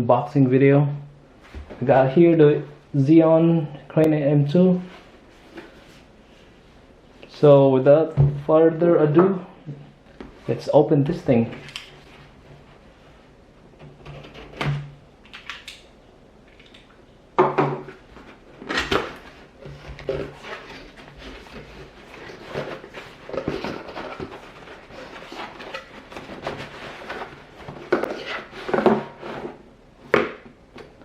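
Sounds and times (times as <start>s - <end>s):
packaging rustling: 18.1s - 29.1s
box knocks and scrapes: 19.0s - 30.4s.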